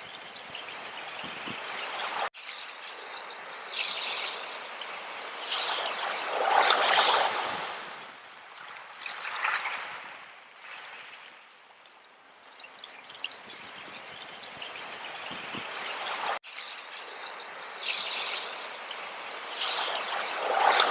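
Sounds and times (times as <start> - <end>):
sea water washing over shells: 15.7 - 20.9.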